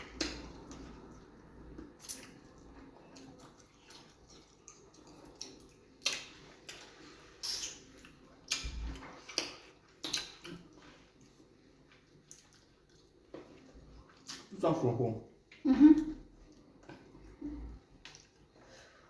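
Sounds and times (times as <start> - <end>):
wet mouth clicks and smacks: 3.2 - 10.7, 18.0 - 18.4.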